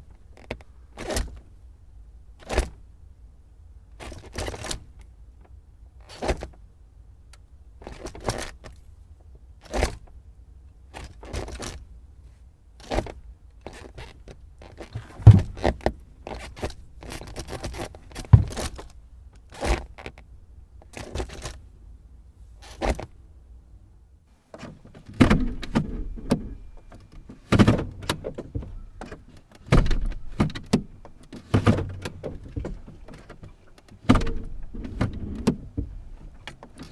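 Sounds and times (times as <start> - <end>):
gear lever clicks and clunks: 12.8 - 21.6, 22.6 - 23.1, 24.5 - 36.9.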